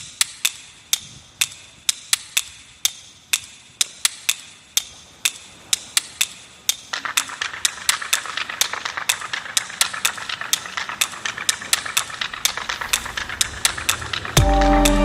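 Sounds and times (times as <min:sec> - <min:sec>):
train wheels clicking over rail joints: 0:00.0 - 0:14.6
moving train rattling: 0:06.8 - 0:15.0.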